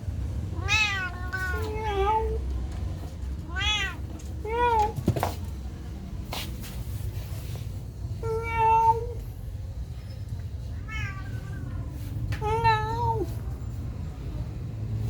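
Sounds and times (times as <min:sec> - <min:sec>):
cat meowing: 0:00.5 - 0:02.4, 0:03.4 - 0:05.0, 0:08.2 - 0:09.2, 0:10.8 - 0:13.4.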